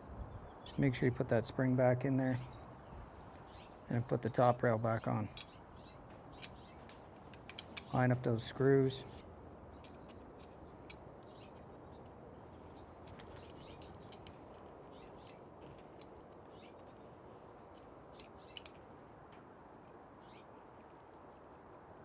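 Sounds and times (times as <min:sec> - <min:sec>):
small clicks of screws and driver: 0:06.4 - 0:07.9, 0:17.7 - 0:19.5.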